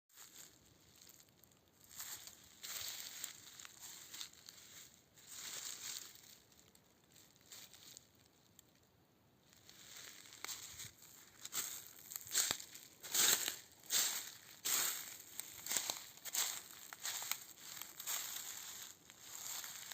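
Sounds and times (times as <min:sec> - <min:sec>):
faint rustling and crinkling: 0:00.1 - 0:19.9.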